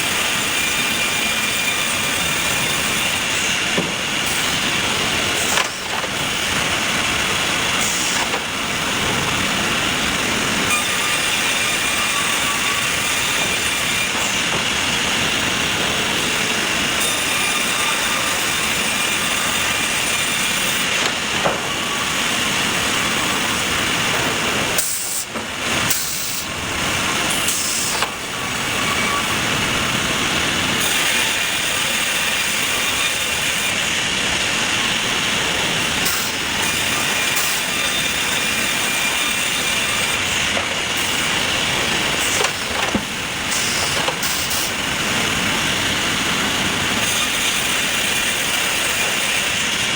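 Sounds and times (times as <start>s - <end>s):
sawmill machinery running: 0.0s - 49.9s.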